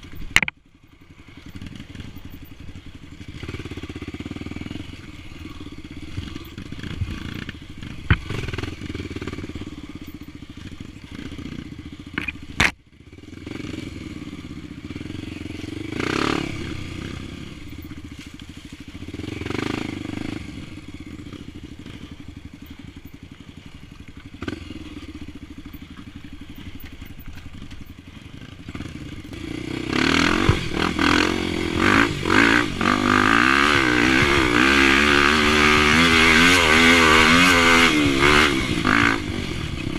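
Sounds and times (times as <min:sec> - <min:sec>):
motorcycle engine revving: 0:00.0 - 0:39.9
sharp knocks and clatter: 0:00.3 - 0:00.6.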